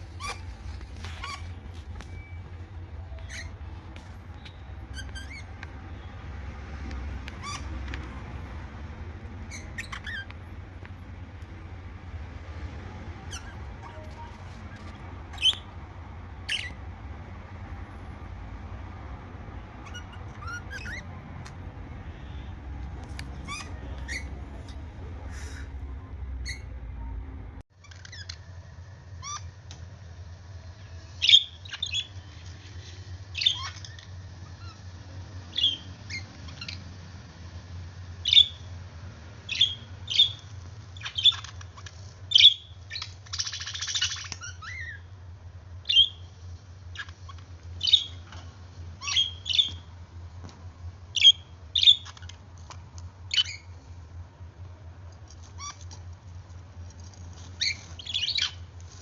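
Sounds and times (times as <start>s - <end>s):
budgerigars chirping and squawking: 0.0s - 2.3s, 3.1s - 3.6s, 4.3s - 5.6s, 7.3s - 7.8s, 9.4s - 10.4s, 13.2s - 15.8s, 16.4s - 16.8s, 19.8s - 21.1s, 23.2s - 24.8s, 29.2s - 29.5s, 31.2s - 32.2s, 33.3s - 34.9s, 35.5s - 36.8s, 38.2s - 38.7s, 39.5s - 45.1s, 45.8s - 46.3s, 46.9s - 48.4s, 49.0s - 49.9s, 51.1s - 52.4s, 53.3s - 53.8s, 55.5s - 55.8s, 57.6s - 58.7s.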